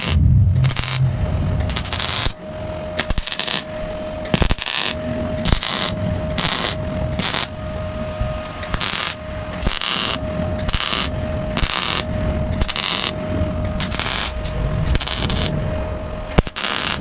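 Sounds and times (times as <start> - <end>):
welding arc bursts: 0.0 - 1.0, 1.6 - 2.4, 3.0 - 3.7, 4.3 - 7.6, 8.6 - 13.2, 13.8 - 15.5, 16.3 - 17.0.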